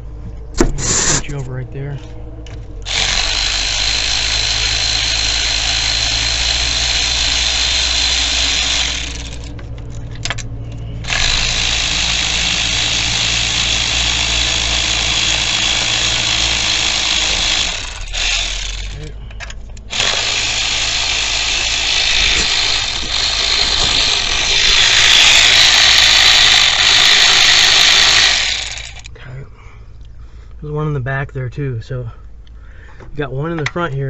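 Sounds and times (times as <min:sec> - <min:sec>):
low steady hum: 0:00.0 - 0:34.0
loud mechanical whirr: 0:02.4 - 0:29.1.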